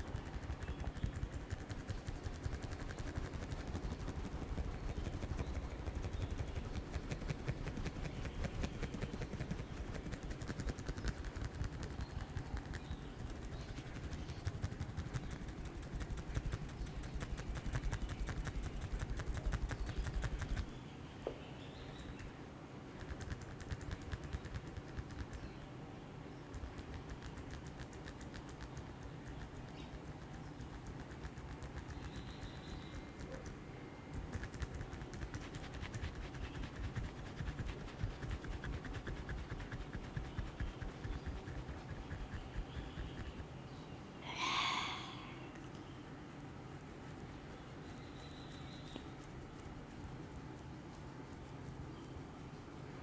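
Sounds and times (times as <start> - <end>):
fast light clicks: 0.0 - 20.7
massage tapping strokes: 0.0 - 20.7.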